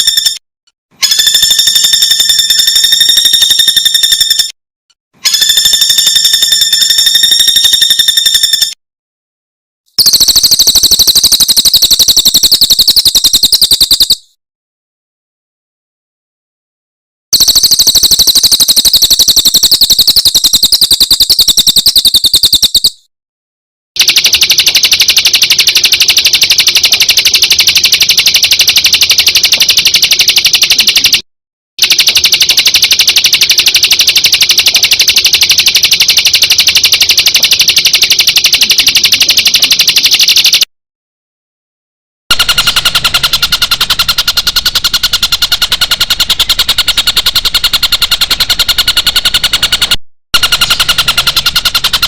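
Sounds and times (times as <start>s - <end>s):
songbird rapid trill: 42.4s - 49.4s.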